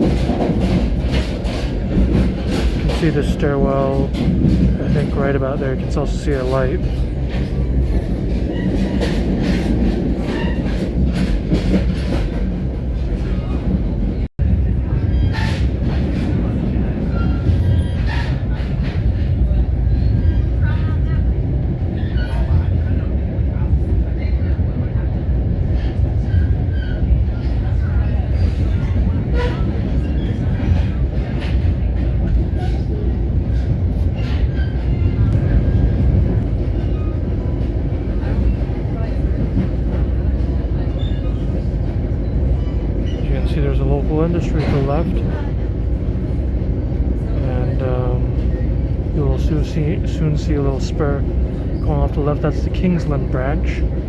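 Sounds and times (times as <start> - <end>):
wheels clicking over rail joints: 0.0 - 13.7
train rumble inside car: 0.0 - 54.0.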